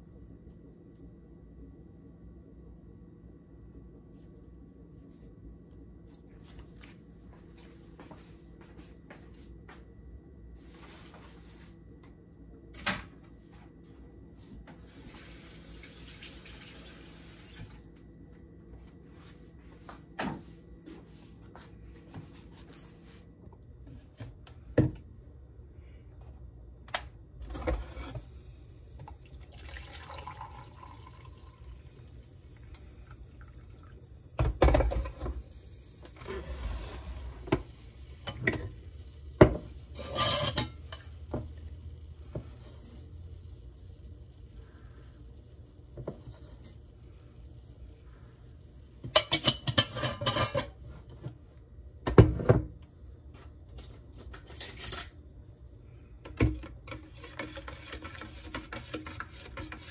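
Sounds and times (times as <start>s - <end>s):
running tap water: 15.0s - 17.8s, 29.0s - 34.1s
dishes clattering: 49.1s - 50.8s.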